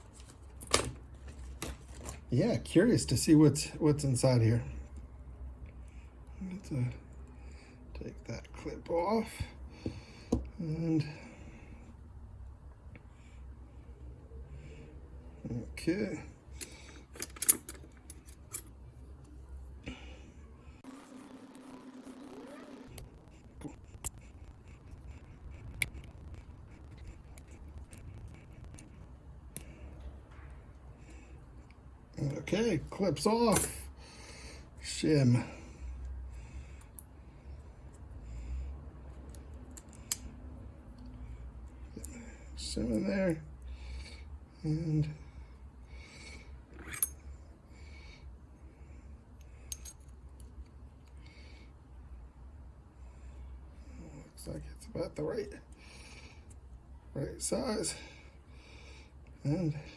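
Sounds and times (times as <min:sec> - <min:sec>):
low steady hum: 0:00.0 - 0:59.9
padlock metal clicks and scraping: 0:16.6 - 0:18.8, 0:39.2 - 0:40.4, 0:46.8 - 0:47.2, 0:49.4 - 0:51.2
metal tool clicking and scraping: 0:49.7 - 0:50.5.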